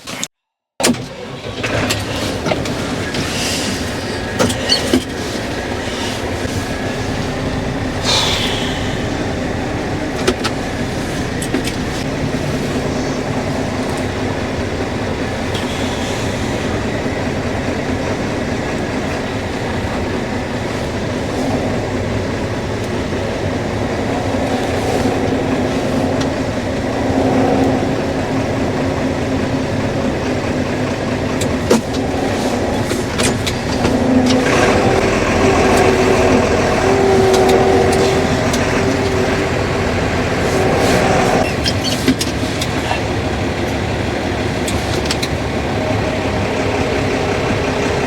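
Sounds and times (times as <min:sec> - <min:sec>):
motor droning: 0:03.6 - 0:41.5.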